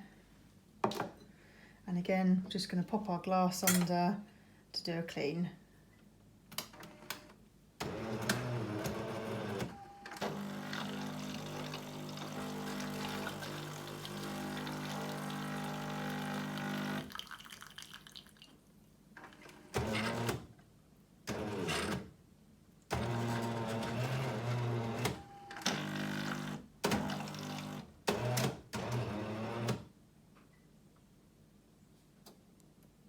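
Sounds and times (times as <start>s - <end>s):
coffee machine pump buzzing: 7.9s - 17.2s, 23.0s - 29.8s.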